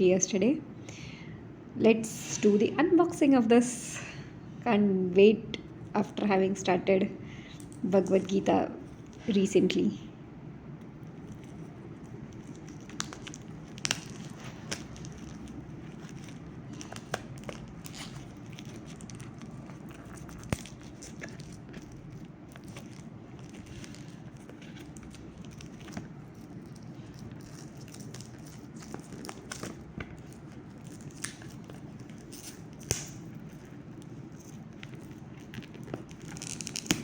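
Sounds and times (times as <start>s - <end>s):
steady low hum: 0.0s - 37.0s
plastic wrapper crinkling: 10.8s - 37.0s.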